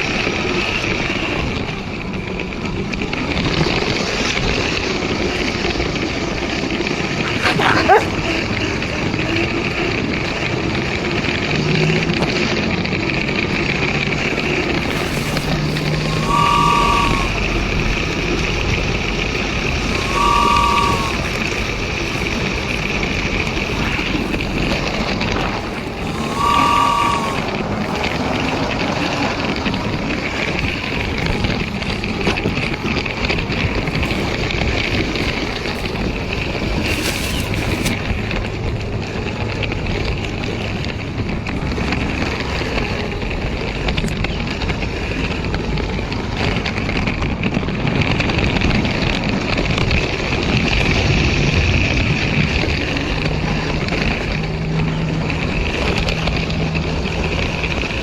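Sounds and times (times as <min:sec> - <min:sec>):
two-note tone: 0:14.3 - 0:38.1
toy train rattling on track: 0:14.3 - 0:38.2.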